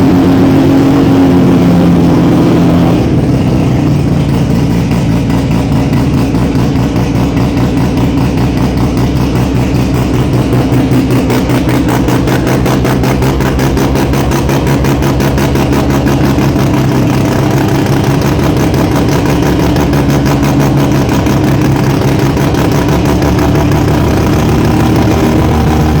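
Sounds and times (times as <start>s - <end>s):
race car engine idling: 0.0s - 26.0s.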